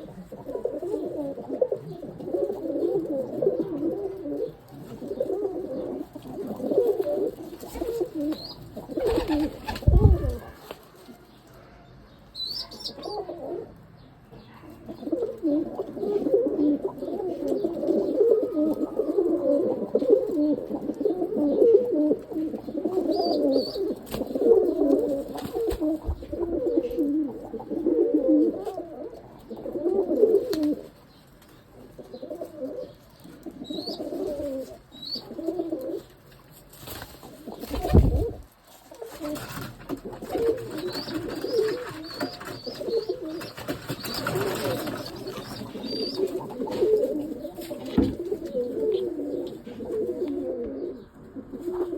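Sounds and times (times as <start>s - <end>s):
pigeons cooing: 0.0s - 11.4s, 12.4s - 51.9s.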